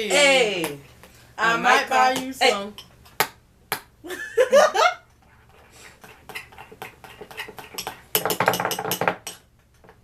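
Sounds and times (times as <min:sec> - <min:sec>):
spoon stirring thick slime: 0:05.2 - 0:09.4.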